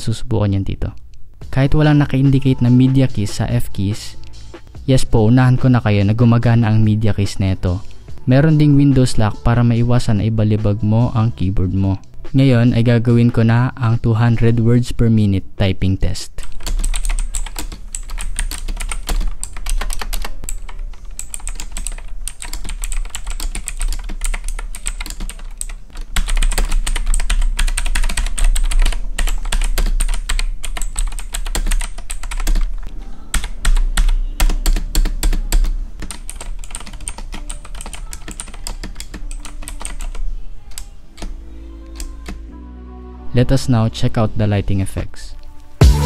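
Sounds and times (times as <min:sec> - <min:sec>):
mechanical keyboard typing: 0:16.4 - 0:42.4.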